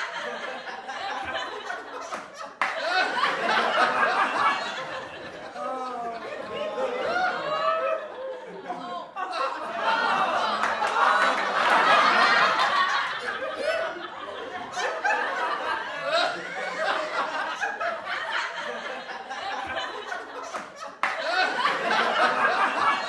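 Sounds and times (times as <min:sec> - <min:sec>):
people laughing: 0:00.0 - 0:23.0.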